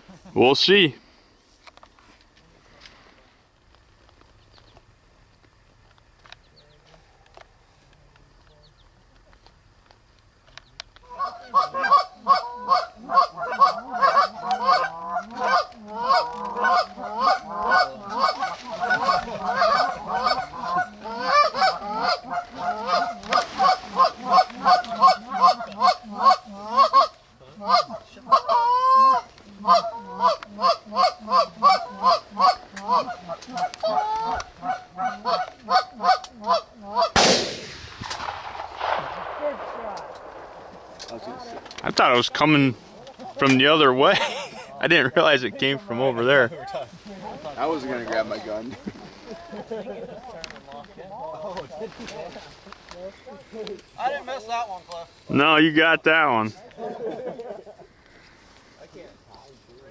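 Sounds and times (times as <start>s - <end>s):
goose honking and clucking: 11.0s - 37.2s
shotgun blast with echo: 37.1s - 41.7s.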